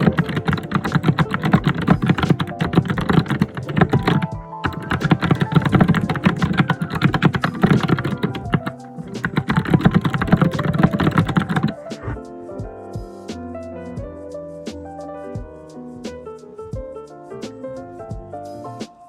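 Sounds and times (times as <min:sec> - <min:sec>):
fast keyboard typing: 0:00.0 - 0:12.2
background music: 0:00.0 - 0:19.0.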